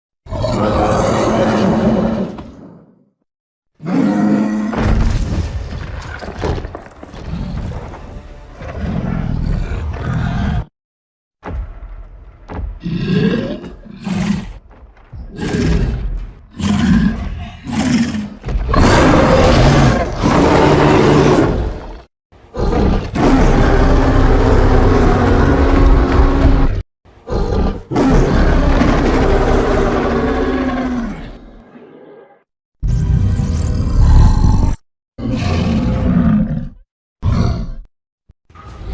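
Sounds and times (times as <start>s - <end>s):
animal roaring and growling: 0.3s - 3.1s, 3.8s - 5.0s, 8.6s - 10.7s, 12.8s - 14.6s, 15.2s - 37.9s.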